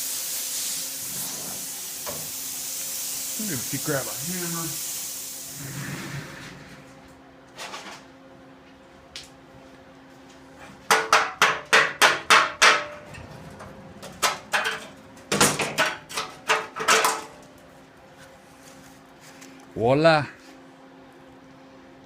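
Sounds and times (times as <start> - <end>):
hammer striking steel: 10.9 - 13.1.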